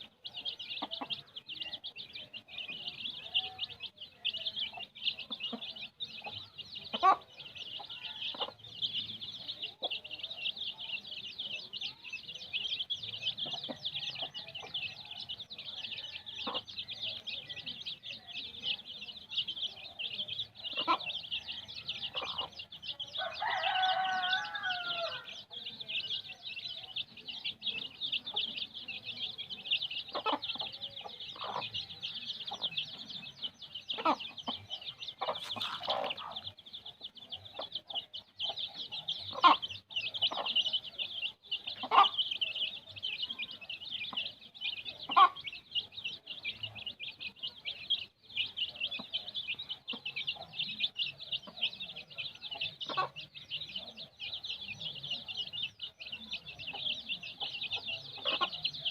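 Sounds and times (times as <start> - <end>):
chicken clucking: 0.0 - 58.9
chicks peeping: 0.0 - 58.9
chicken drawn-out call: 23.2 - 25.3, 35.3 - 36.4.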